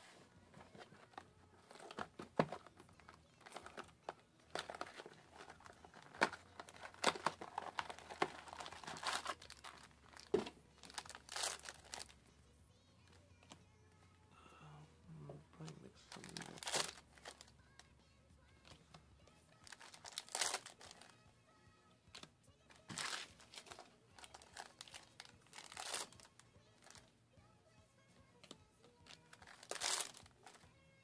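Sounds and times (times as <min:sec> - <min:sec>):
foil wrappers crinkling and tearing: 0:01.6 - 0:12.2, 0:16.0 - 0:17.5, 0:19.6 - 0:21.1, 0:22.8 - 0:27.0, 0:29.0 - 0:30.6.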